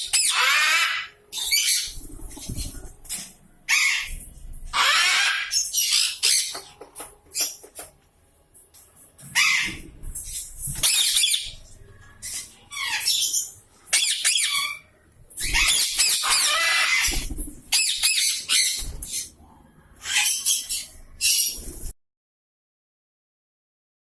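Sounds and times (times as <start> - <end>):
parrot squawking: 0.0 - 2.0, 3.7 - 6.6, 9.3 - 11.6, 12.2 - 14.8, 15.4 - 19.2.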